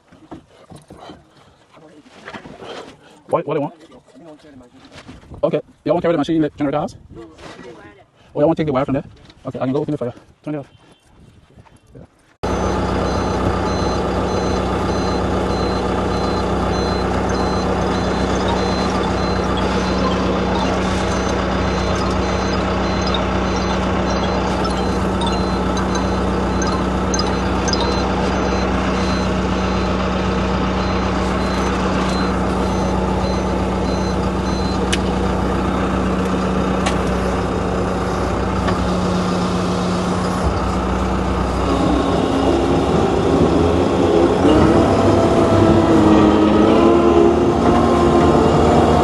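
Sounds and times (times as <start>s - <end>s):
reversing alarm beeping: 12.4s - 34.9s
heavy machine engine running: 12.4s - 49.0s.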